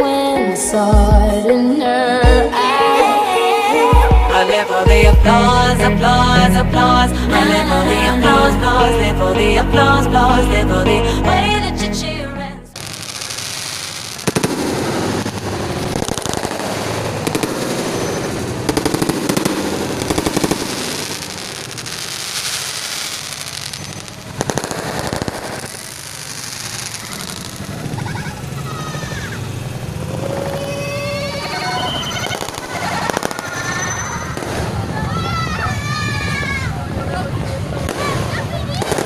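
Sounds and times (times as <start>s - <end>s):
fireworks crackling: 12.7s - 39.0s
loud firework bursts: 12.8s - 36.8s, 37.6s - 39.0s.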